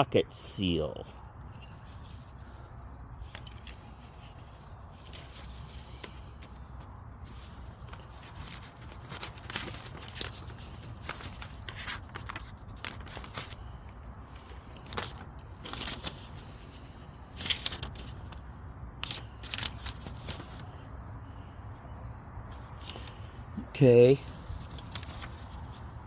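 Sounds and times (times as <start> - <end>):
steady low hum: 0.0 - 9.2
packing rustling: 7.3 - 13.6, 14.8 - 16.4, 17.3 - 18.4, 19.0 - 20.7, 24.4 - 25.8.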